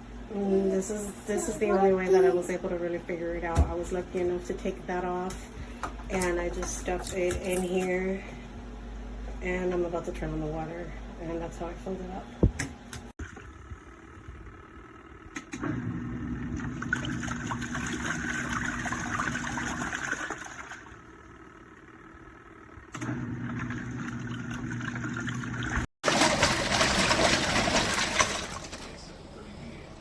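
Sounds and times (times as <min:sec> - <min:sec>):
steady low hum: 0:00.0 - 0:23.0
water rushing through a hose: 0:24.4 - 0:28.9.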